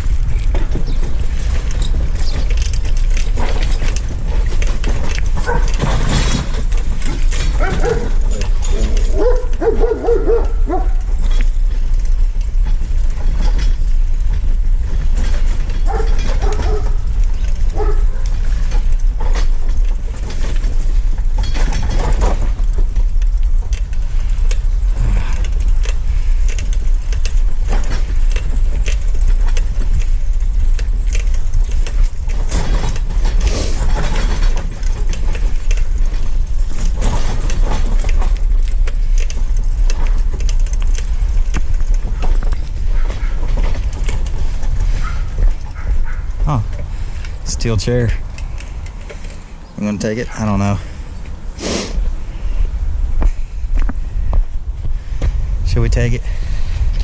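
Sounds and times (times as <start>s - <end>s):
wind buffeting microphone: 0.0s - 57.0s
dog barking and whining: 5.4s - 5.8s, 7.5s - 8.4s, 9.0s - 11.1s, 15.9s - 17.1s, 17.7s - 18.4s.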